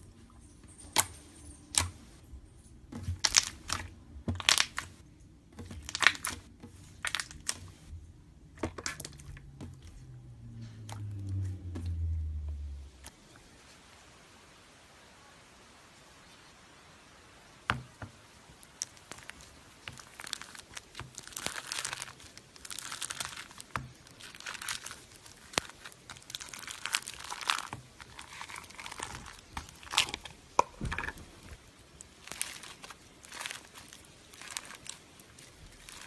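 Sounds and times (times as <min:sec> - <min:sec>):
slime crackling and popping: 0:03.0 - 0:05.0, 0:05.6 - 0:07.9, 0:08.6 - 0:10.1, 0:18.6 - 0:36.0.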